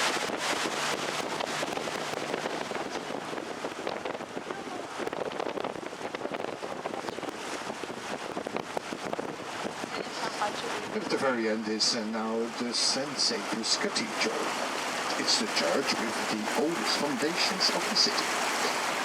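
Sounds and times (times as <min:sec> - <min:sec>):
wind on microphone: 0:00.0 - 0:11.7
boat motor: 0:00.0 - 0:19.0
water noise: 0:00.0 - 0:19.0.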